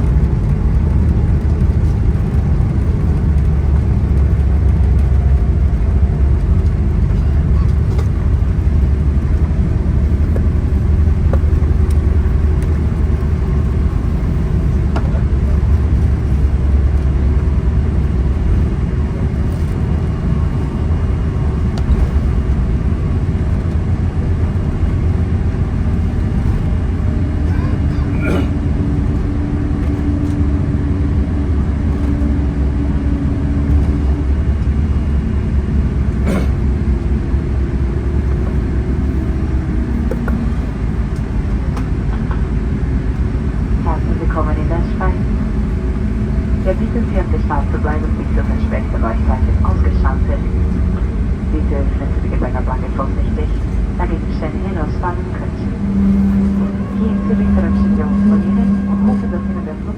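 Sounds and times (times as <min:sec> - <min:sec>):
airliner cabin rumble: 0:00.0 - 0:59.9
steady hum: 0:42.9 - 0:59.9.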